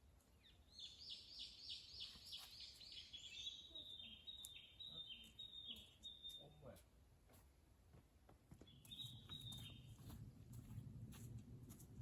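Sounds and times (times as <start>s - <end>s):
songbird singing: 0.3s - 6.8s, 8.6s - 10.4s.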